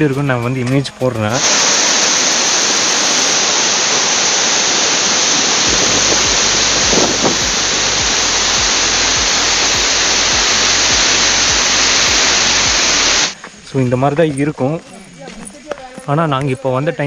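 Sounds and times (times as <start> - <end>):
waterfall rushing: 1.4 - 13.4
low regular thumping: 5.7 - 13.3.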